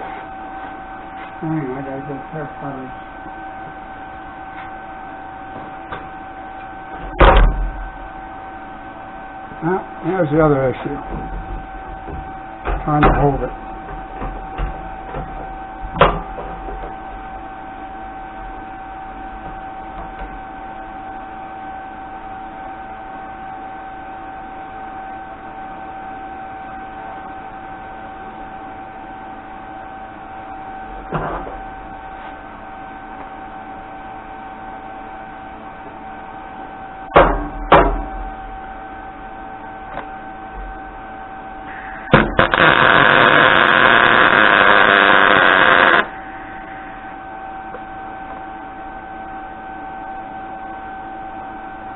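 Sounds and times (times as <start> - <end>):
steady mechanical hum: 0.0 - 51.9
loud steady noise: 41.6 - 48.9.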